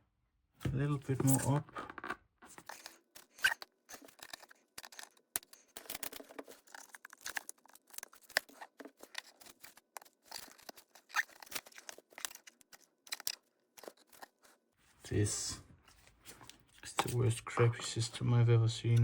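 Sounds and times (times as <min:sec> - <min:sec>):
small tool clicks and scrapes: 0:02.5 - 0:14.6.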